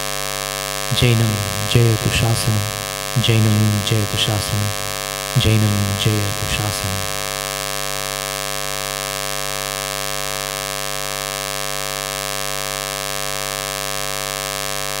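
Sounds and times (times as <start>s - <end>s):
mains hum: 0.0s - 15.0s.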